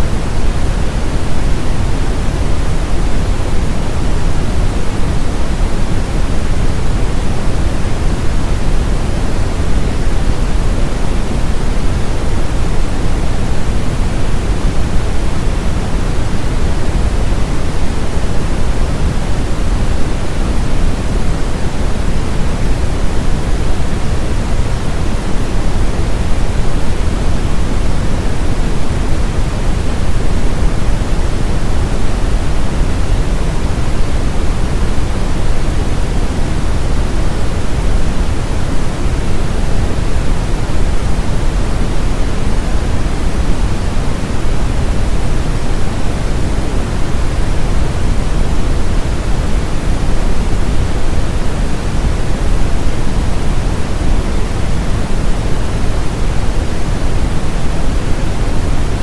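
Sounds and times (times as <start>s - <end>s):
brown noise rumbling hiss: 0.0s - 59.0s.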